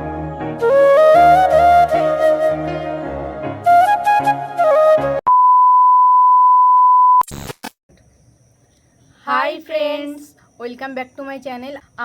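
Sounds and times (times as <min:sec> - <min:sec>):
flute-like melody: 0:00.0 - 0:05.3.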